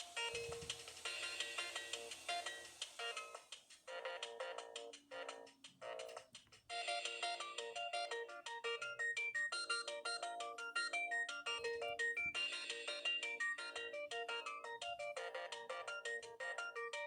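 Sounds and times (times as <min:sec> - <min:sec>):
synthesized ringtone melody: 0:06.7 - 0:17.0.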